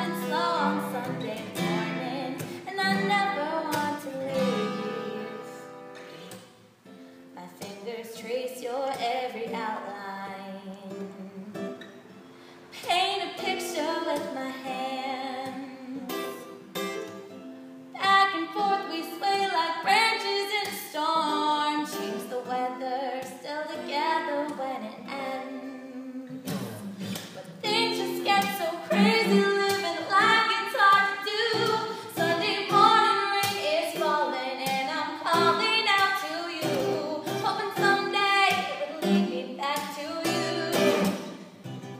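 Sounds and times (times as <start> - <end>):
woman singing: 0.0 - 5.9, 7.4 - 11.9, 12.7 - 16.6, 18.0 - 41.4
plucked acoustic guitar: 0.0 - 41.9.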